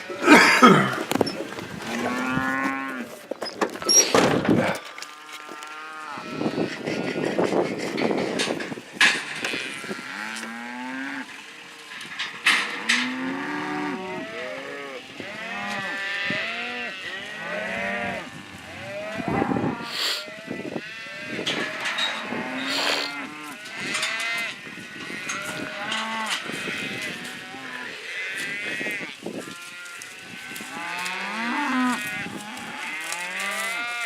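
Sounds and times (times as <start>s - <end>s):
cattle mooing: 1.9s - 3.2s, 9.3s - 11.4s, 12.4s - 34.0s.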